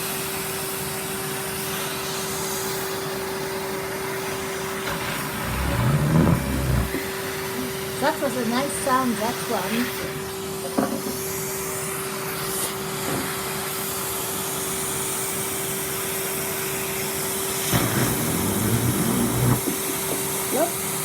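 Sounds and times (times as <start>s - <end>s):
vacuum cleaner motor hum: 1.8s - 15.2s, 17.6s - 20.3s
sweet rattling up vacuum hose: 4.8s - 7.1s, 17.7s - 20.2s.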